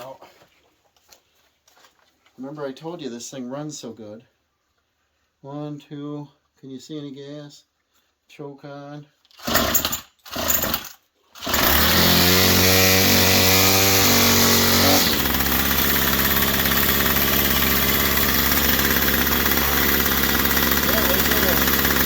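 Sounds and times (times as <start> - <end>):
recoil starter cord yanks: 9.2 - 22.0
string trimmer engine running: 9.4 - 22.0.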